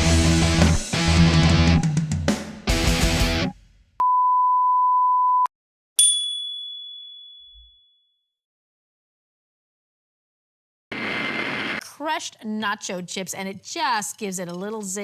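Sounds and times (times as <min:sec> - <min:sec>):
electric guitar rock music: 0:00.0 - 0:02.0, 0:02.6 - 0:03.5
steady single-pitch beep: 0:04.0 - 0:07.6
bell-like ding: 0:06.0 - 0:07.9.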